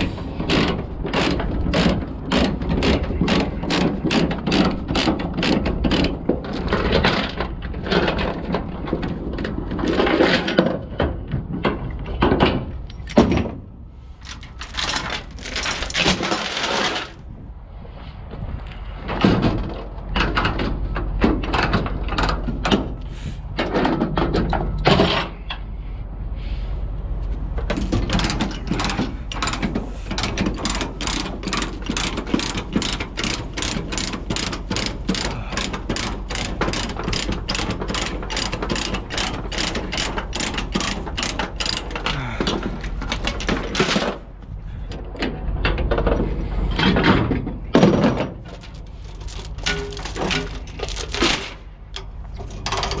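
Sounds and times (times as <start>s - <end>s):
metal scraping and clanking: 0.0s - 17.3s, 19.0s - 25.6s, 27.7s - 53.0s
hand ratchet clicking: 28.1s - 43.8s.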